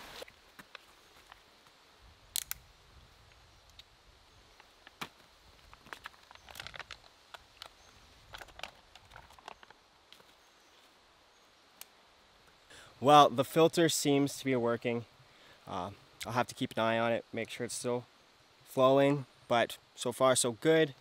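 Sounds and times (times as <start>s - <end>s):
camping gear clicks and taps: 4.6s - 10.4s.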